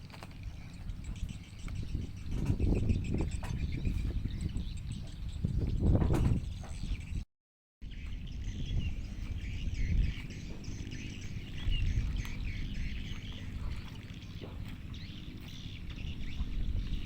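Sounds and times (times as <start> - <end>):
small birds chirping: 0.0 - 7.2, 7.8 - 17.0
low outdoor rumble: 7.8 - 17.0.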